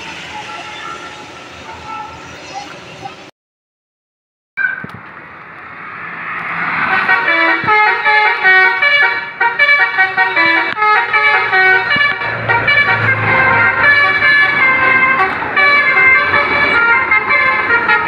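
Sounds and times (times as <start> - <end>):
multi-tone musical bus horn: 0.0 - 2.2, 6.8 - 18.0.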